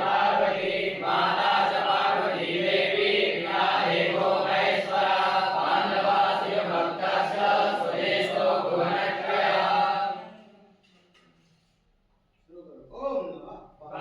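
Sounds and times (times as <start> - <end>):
group chanting in unison: 0.0 - 10.8.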